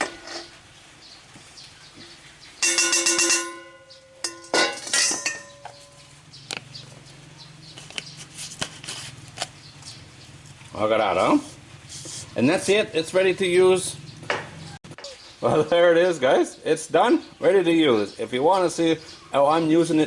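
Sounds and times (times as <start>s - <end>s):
bowl ringing: 2.6s - 6.0s
utensil scraping a bowl: 11.4s - 12.8s.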